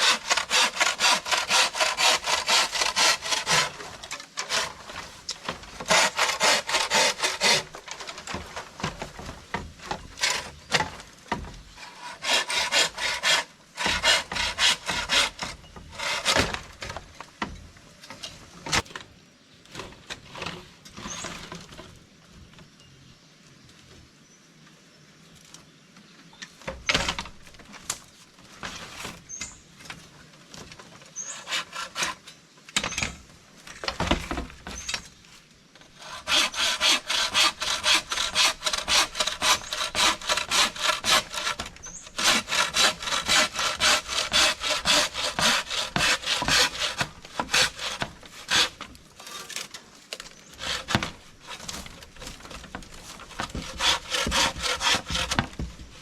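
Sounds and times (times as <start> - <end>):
hand saw cutting wood: 0.0 - 11.0, 11.7 - 16.9, 31.2 - 32.2, 35.9 - 49.7, 50.4 - 56.0
knocks and scrapes: 0.0 - 12.2, 13.8 - 19.0, 19.7 - 22.5, 26.6 - 56.0.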